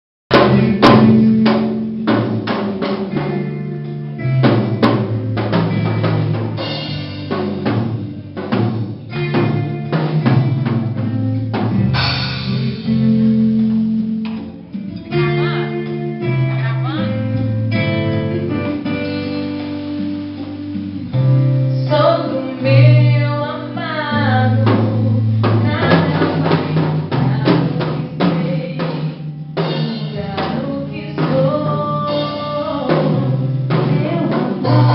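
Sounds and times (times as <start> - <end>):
rock song with drums bass guitar: 0.3 - 34.9
person singing: 21.6 - 34.9.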